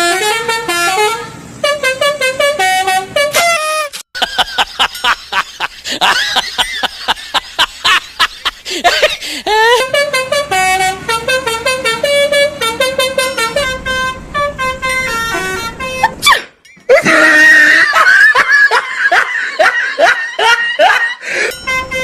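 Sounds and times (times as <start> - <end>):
musical bus horn tune: 0.0 - 4.1, 8.9 - 16.6, 21.2 - 22.0.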